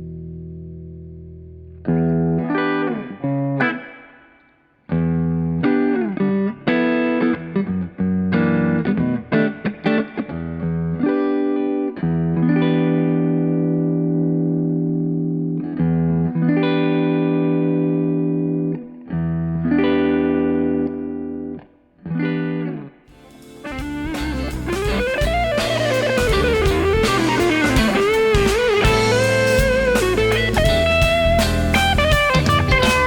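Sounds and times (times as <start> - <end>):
electric guitar chords: 0.0 - 33.0
electric guitar lead with bends: 0.0 - 33.0
drum backing track: 23.1 - 33.0.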